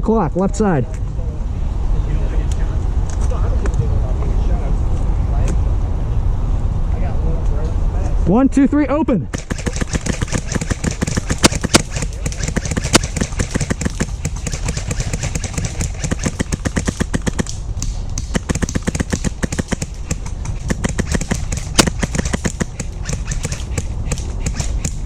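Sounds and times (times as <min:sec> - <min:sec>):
steady low rumble: 0:00.0 - 0:25.0
airsoft rifles firing full auto: 0:09.3 - 0:17.6, 0:18.2 - 0:25.0
loud crack: 0:09.3 - 0:25.0.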